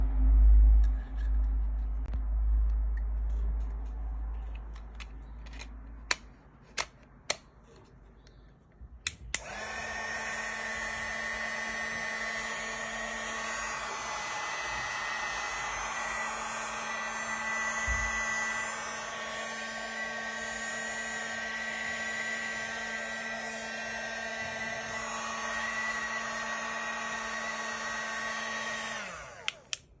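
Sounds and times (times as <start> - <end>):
sharp clicks: 9.0 - 9.5
small motor whining: 9.4 - 29.8.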